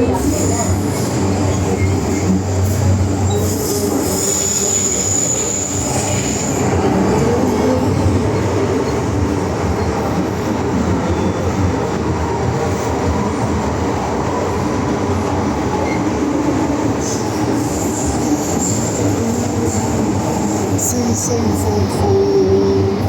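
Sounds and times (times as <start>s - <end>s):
train wheels rumbling on rail: 0.0s - 23.0s.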